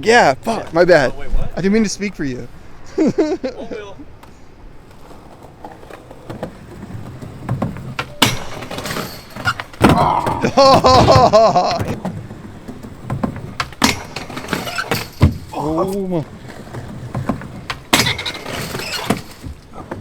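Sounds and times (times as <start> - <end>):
skateboard wheels rolling: 0.0 - 20.0
skateboard knocking and clacking: 4.2 - 20.0.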